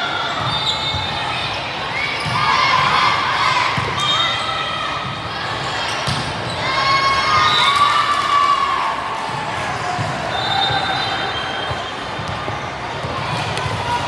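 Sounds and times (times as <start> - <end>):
voices of players and spectators: 0.0 - 14.0
sneakers squeaking on court floor: 0.4 - 2.9, 3.8 - 7.7.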